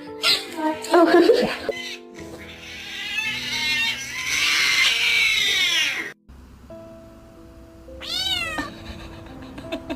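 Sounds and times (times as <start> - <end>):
light background music: 0.0 - 9.9
cat meowing: 1.8 - 6.1, 8.0 - 8.7.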